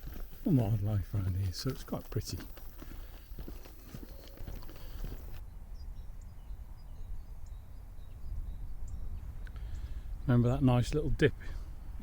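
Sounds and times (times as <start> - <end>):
footsteps on path: 0.0 - 5.4
wind buffeting microphone: 2.2 - 12.0.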